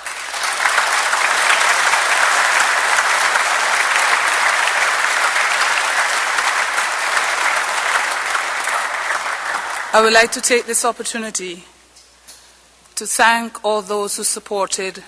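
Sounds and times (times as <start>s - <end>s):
audience applause: 0.0s - 10.8s.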